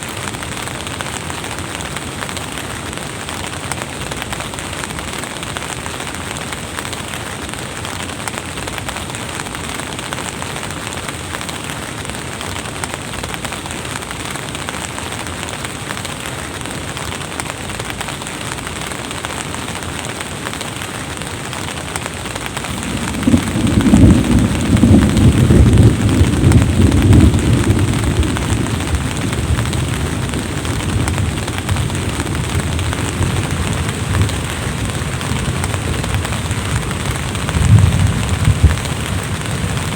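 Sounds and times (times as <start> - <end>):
drizzling rain hiss: 0.0 - 39.9
low rumble of thunder: 22.5 - 39.9.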